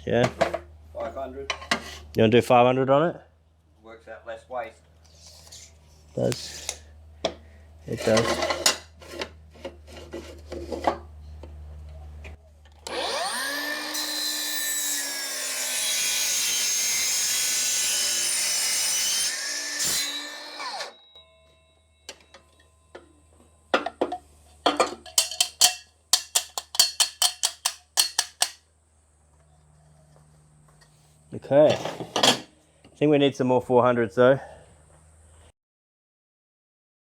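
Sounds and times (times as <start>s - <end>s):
chop saw cutting metal tubing: 12.8s - 21.2s
sharp clinks and knocks: 21.1s - 28.6s.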